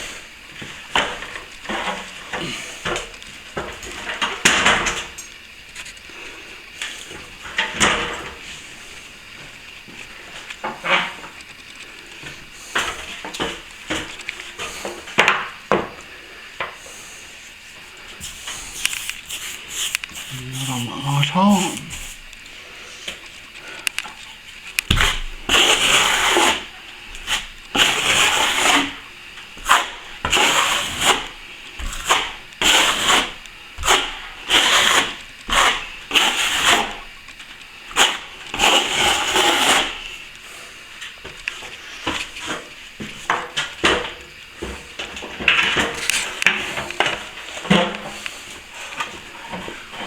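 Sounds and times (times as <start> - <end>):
tool scraping plaster ceiling: 18.2 - 22.3, 24.9 - 37.1, 37.9 - 40.1.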